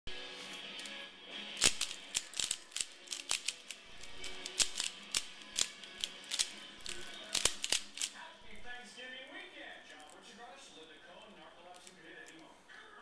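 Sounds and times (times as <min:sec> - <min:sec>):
faint background music: 0:00.1 - 0:13.0
plastic puzzle cube clicks: 0:01.6 - 0:08.2.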